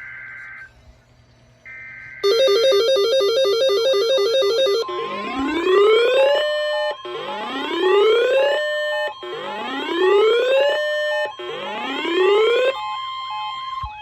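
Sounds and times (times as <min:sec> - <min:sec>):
steady high tone: 0:02.2 - 0:14.0
warbling siren tone: 0:02.2 - 0:14.0
rising siren whoop: 0:04.8 - 0:14.0.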